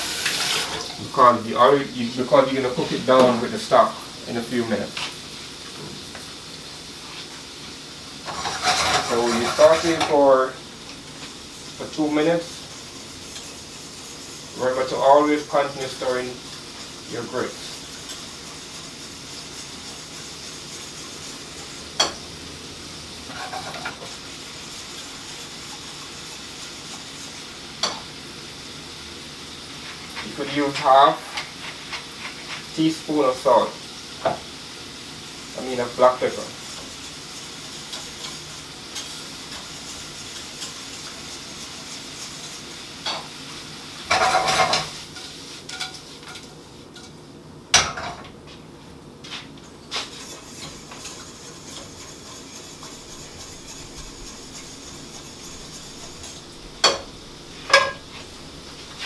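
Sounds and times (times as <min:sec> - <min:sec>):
shrimp sizzling in a pan: 0:00.0 - 0:48.2, 0:49.3 - 0:59.0
stirring noises: 0:07.0 - 0:27.8, 0:29.7 - 0:33.7, 0:49.2 - 0:59.0
utensil clacking on pan: 0:50.4 - 0:59.0.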